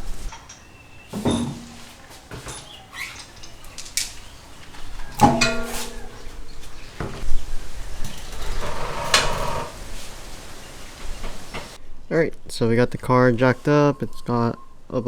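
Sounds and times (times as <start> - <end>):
metal parts clinking: 0.0 - 7.2
metal rattling: 0.0 - 11.8
sharp metallic clank: 0.3 - 4.4, 5.0 - 7.3.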